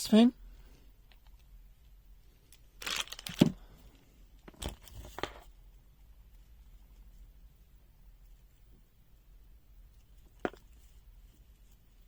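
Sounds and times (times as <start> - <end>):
rustling of packaging: 2.5 - 5.5.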